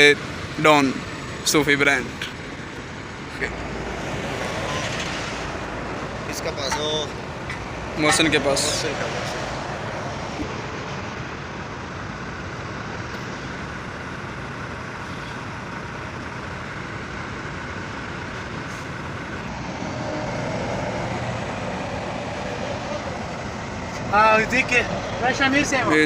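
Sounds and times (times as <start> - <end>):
vehicle engines running: 0.0 - 26.0.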